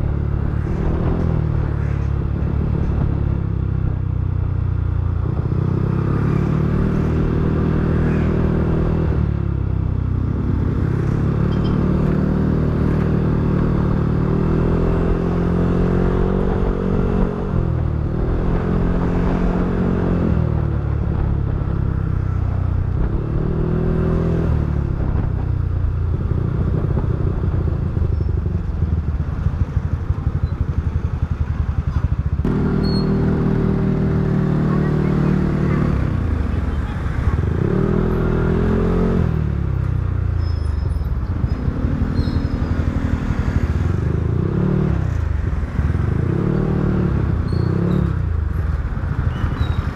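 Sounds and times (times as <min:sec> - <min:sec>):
scooter engine revving: 0:32.4 - 0:39.8.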